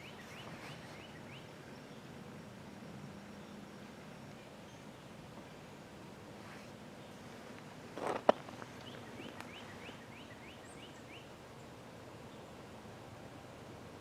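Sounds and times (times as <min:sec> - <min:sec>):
bird chirping: 0:00.0 - 0:02.2, 0:08.4 - 0:12.6.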